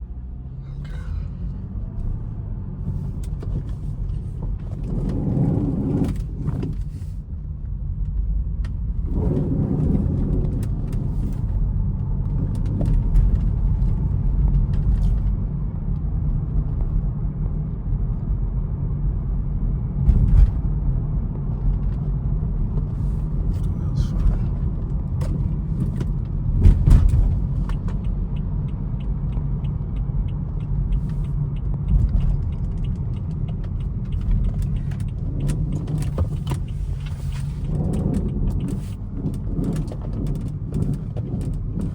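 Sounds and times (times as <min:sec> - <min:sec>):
steering grinding: 0:01.6 - 0:07.1, 0:22.6 - 0:41.9
car engine idling: 0:22.9 - 0:26.0.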